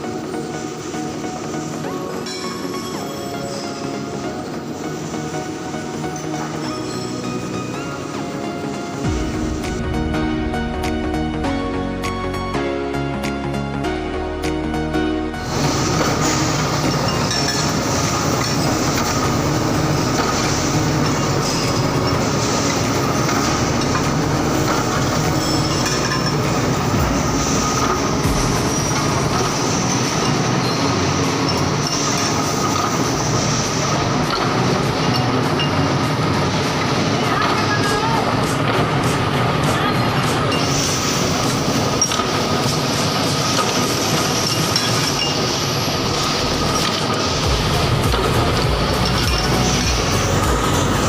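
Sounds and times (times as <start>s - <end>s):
forging machinery clattering: 15.5s - 51.0s.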